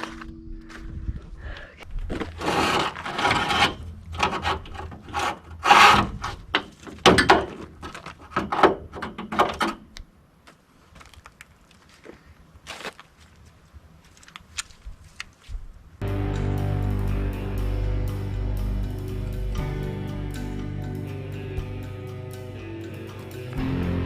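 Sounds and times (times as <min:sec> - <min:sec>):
scraping and rubbing: 0:02.1 - 0:07.0.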